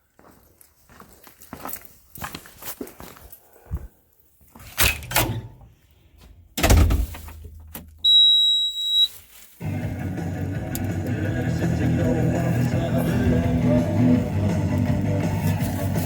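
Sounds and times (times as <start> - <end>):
music with steady beat: 9.6 - 16.0.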